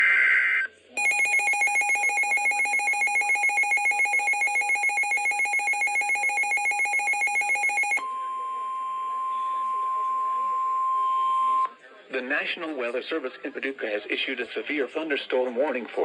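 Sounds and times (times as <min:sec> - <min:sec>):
rapid warbling alarm tone: 0:01.0 - 0:08.0.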